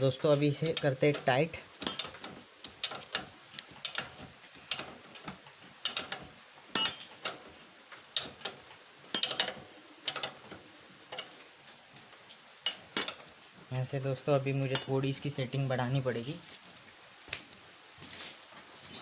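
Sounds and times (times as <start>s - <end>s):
wrench clicking and clinking: 0.5s - 5.0s, 6.8s - 7.4s, 8.2s - 10.4s, 14.7s - 15.1s.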